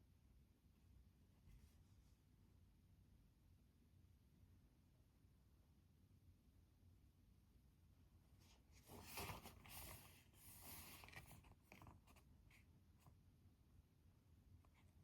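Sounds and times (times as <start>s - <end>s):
rustling and scratching at desk: 8.4s - 13.2s.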